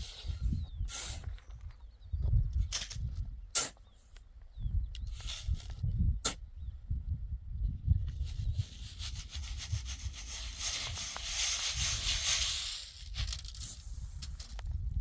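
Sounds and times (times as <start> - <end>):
rough scraping: 8.2 - 14.6.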